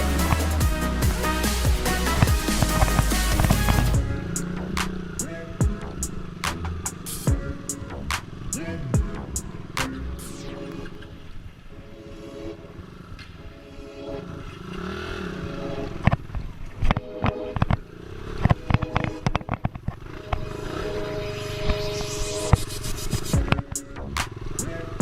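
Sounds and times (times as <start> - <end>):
motorcycle engine running: 0.0 - 9.8, 23.3 - 25.0.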